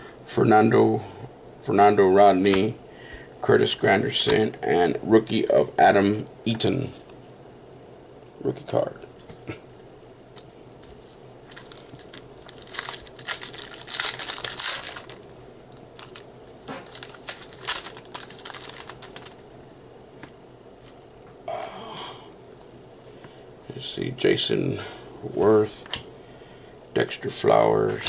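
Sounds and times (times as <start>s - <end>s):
foil wrapper crinkling and tearing: 11.4s - 19.6s.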